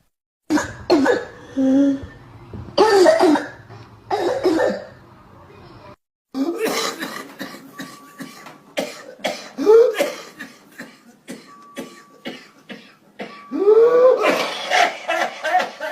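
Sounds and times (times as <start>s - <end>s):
person coughing: 0.5s - 2.1s, 2.8s - 4.9s, 6.4s - 13.6s.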